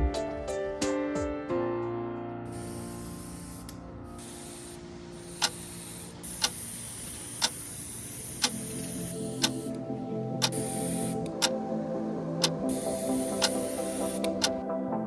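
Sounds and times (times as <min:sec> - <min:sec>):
background music: 0:00.0 - 0:15.0
steady hiss: 0:02.5 - 0:09.8.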